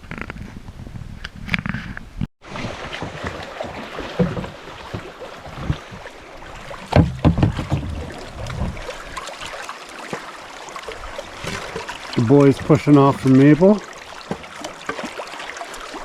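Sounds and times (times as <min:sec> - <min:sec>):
wind noise on microphone: 0:00.0 - 0:02.3, 0:07.0 - 0:09.2
water sloshing: 0:02.4 - 0:16.0
knocks against canoe hulls: 0:03.0 - 0:05.8, 0:06.4 - 0:09.2.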